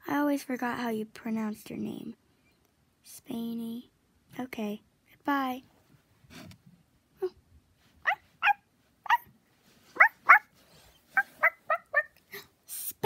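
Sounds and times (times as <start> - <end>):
dog yapping: 8.0 - 12.2.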